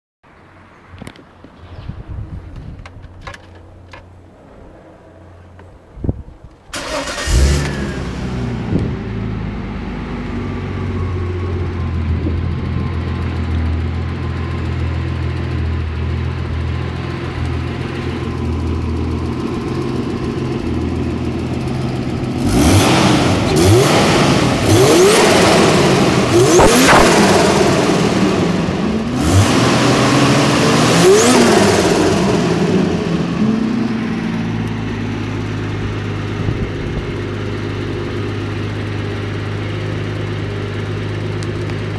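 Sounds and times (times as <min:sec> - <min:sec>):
car engine starting and idling: 0:06.5 - 0:41.9
engine revving: 0:06.8 - 0:12.4, 0:16.3 - 0:37.2.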